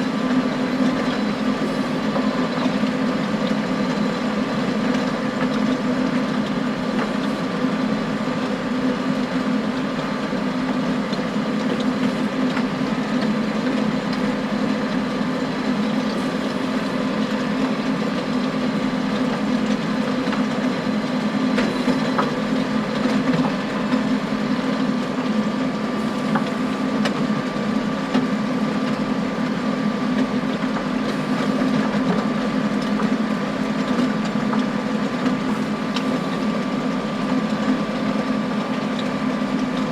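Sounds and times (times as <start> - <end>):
harrow tines working ground: 0.0 - 39.9
tractor engine under load: 0.0 - 39.9.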